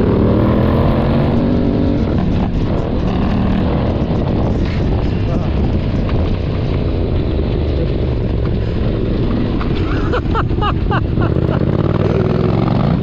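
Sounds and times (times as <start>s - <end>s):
motorcycle engine running: 10.4s - 13.0s.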